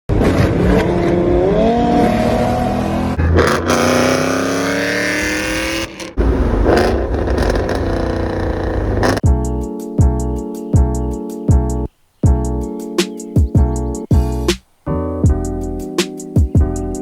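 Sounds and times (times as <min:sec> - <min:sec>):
car engine accelerating: 0:00.1 - 0:09.2.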